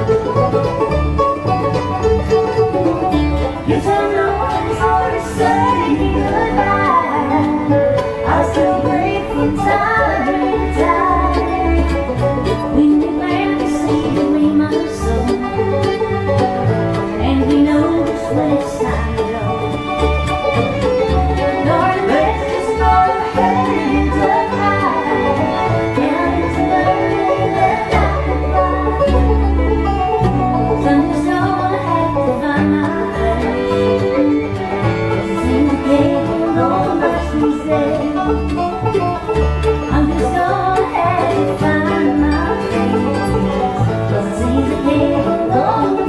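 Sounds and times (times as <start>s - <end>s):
banjo runs: 0.0s - 46.0s
double bass: 0.0s - 46.0s
fiddle runs: 0.0s - 46.0s
guitar: 0.0s - 46.0s.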